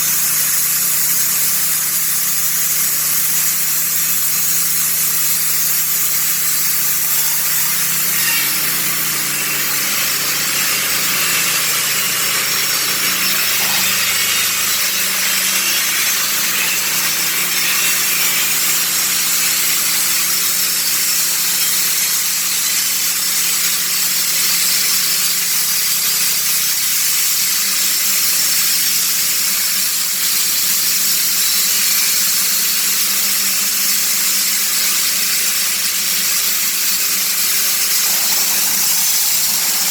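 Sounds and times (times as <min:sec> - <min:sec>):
sawmill engine running: 0:00.0 - 0:21.9, 0:34.6 - 0:39.9
blade sawing through log: 0:00.0 - 0:26.0, 0:29.8 - 0:39.9.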